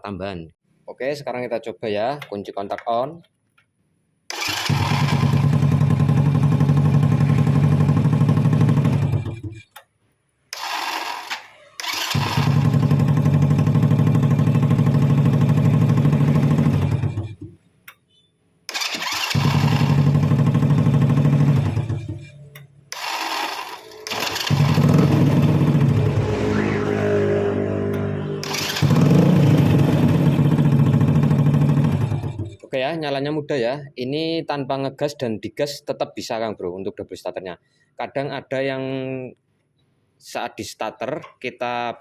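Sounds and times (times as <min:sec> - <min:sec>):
small engine running: 0:04.3 - 0:09.3, 0:10.6 - 0:17.2, 0:18.7 - 0:22.2, 0:22.9 - 0:26.9, 0:27.9 - 0:32.5
electric starter cranking: 0:04.3 - 0:09.6, 0:10.5 - 0:14.3, 0:18.7 - 0:26.0, 0:28.4 - 0:32.6.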